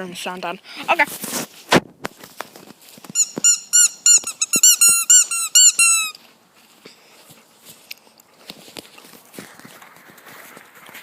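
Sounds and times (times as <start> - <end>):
squeaky toy squeaking: 3.2 - 6.2.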